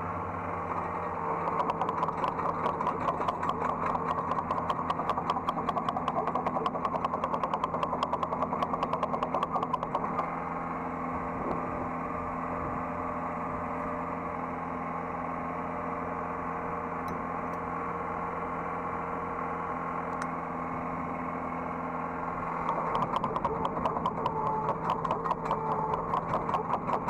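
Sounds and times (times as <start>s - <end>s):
rapid even pulsing: 1.3s - 10.4s, 22.6s - 27.0s.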